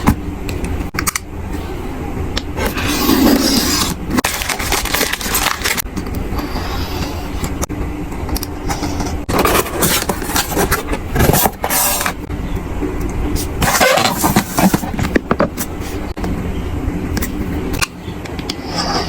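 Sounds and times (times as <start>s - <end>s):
steady low rumble: 0.0s - 11.3s
packaging rustling and scraping: 2.6s - 5.8s, 8.6s - 12.3s, 13.4s - 16.1s.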